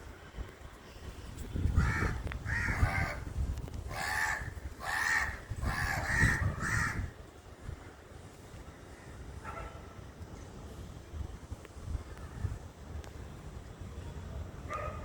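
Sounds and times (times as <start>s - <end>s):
crows cawing: 1.8s - 3.2s, 3.9s - 7.1s.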